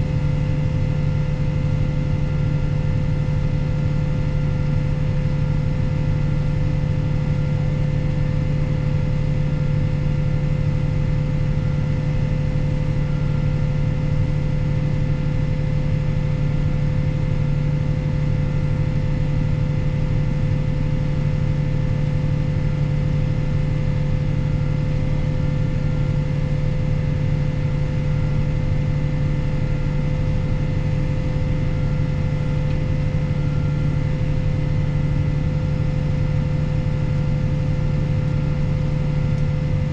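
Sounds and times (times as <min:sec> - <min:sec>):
tractor diesel engine running: 0:23.4 - 0:39.9.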